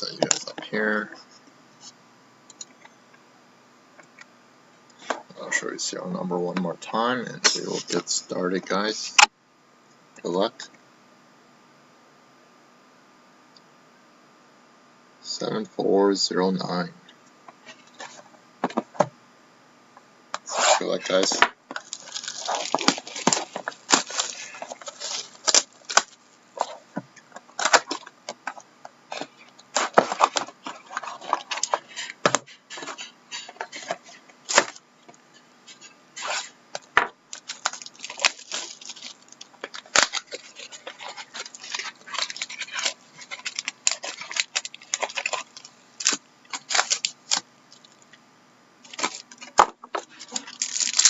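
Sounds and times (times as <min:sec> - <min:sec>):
packaging crinkling and tearing: 0:20.6 - 0:26.8, 0:27.6 - 0:34.8, 0:37.3 - 0:48.0, 0:48.8 - 0:51.0.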